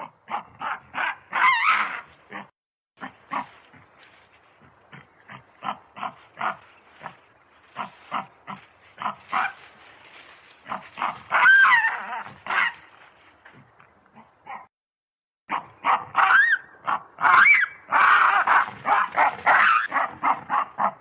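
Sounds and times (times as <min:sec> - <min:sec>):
baboon call rising and falling: 0:10.7 - 0:12.8, 0:15.5 - 0:21.0.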